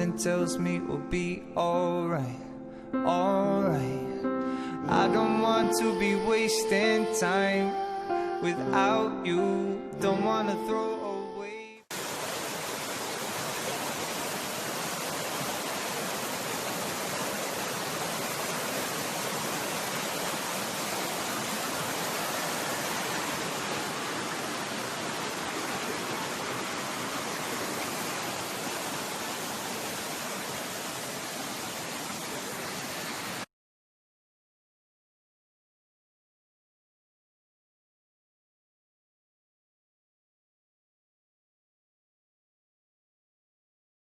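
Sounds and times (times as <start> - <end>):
waterfall rushing: 11.9 - 33.5.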